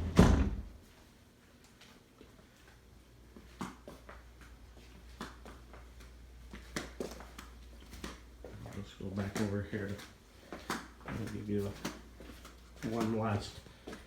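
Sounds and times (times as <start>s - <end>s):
loud thump: 0.0s - 0.7s.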